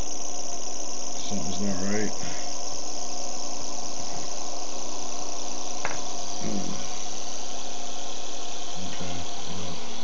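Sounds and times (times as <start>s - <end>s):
electric motor buzzing: 0.0s - 10.0s.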